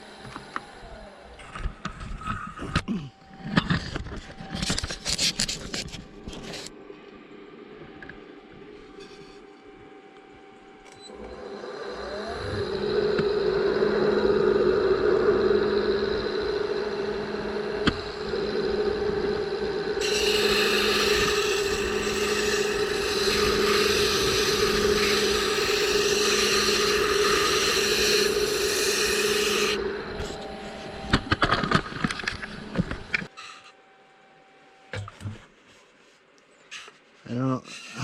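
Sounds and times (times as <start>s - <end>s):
wood lathe humming: 11.1s - 31.4s
sandpaper hissing on spinning wood: 20.0s - 29.8s.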